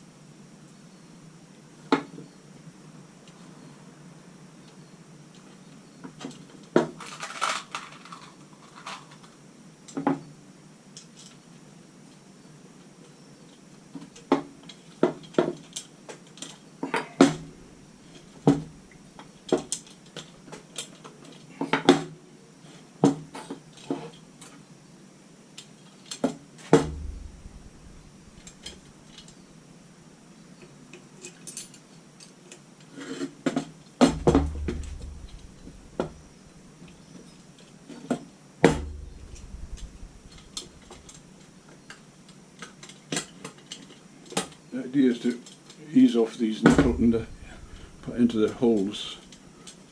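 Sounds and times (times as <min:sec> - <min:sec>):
dull knocks: 0:26.8 - 0:28.8, 0:34.0 - 0:36.6, 0:38.7 - 0:41.1, 0:46.7 - 0:48.4.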